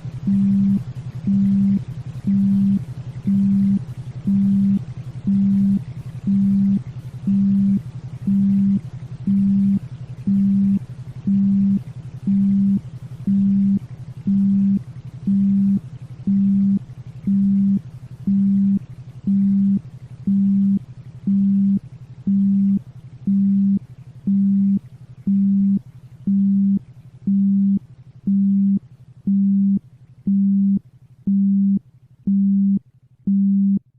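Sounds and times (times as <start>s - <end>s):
pulsing low electronic tone: 0.0s - 33.8s
steady low hum: 0.0s - 33.9s.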